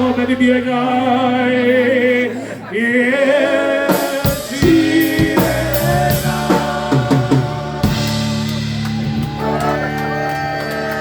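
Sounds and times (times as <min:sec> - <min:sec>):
polka band playing: 0:03.6 - 0:11.0
drum hits: 0:03.9 - 0:09.5.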